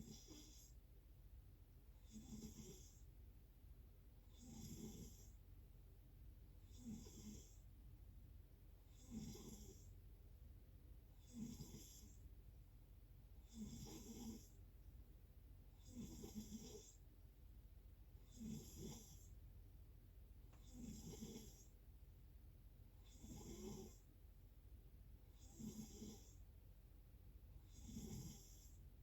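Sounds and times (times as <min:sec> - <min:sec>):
person snoring faintly: 0:00.0 - 0:00.8, 0:02.0 - 0:03.0, 0:04.3 - 0:05.4, 0:06.6 - 0:07.6, 0:08.9 - 0:10.0, 0:11.2 - 0:12.2, 0:13.4 - 0:14.6, 0:15.8 - 0:17.0, 0:18.2 - 0:19.4, 0:20.6 - 0:21.8, 0:23.0 - 0:24.1, 0:25.4 - 0:26.4, 0:27.6 - 0:28.8.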